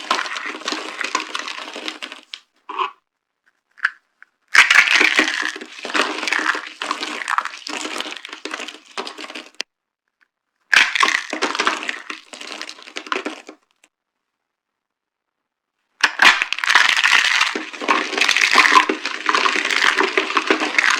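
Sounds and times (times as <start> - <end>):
dry soap crunching: 0.0 - 3.0, 3.6 - 9.6, 10.7 - 13.7, 16.0 - 20.9.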